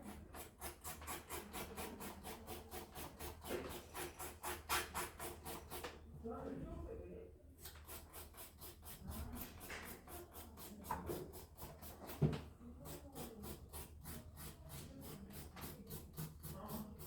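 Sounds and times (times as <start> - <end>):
nail file rubbing on fingernail: 7.7 - 12.2, 12.9 - 17.0.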